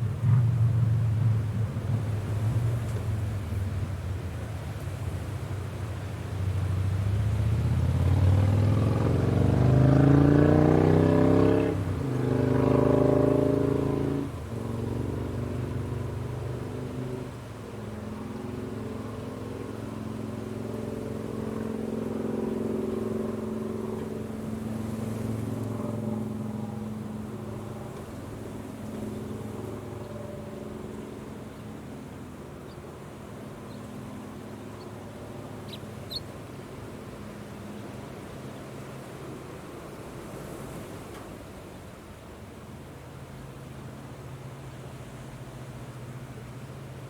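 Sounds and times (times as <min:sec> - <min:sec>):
vehicle engine hum: 0:00.0 - 0:47.0.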